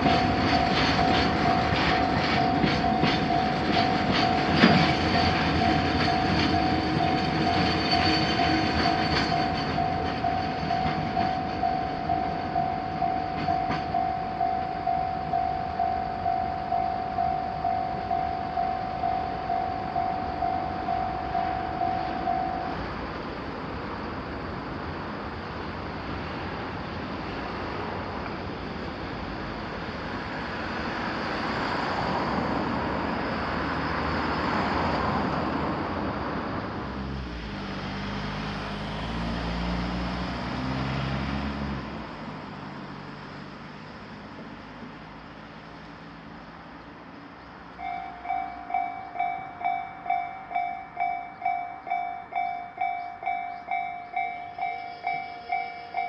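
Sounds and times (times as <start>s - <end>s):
railroad crossing warning bell: 0.0s - 23.6s, 45.8s - 56.0s
vehicles passing over crossing: 0.0s - 56.0s.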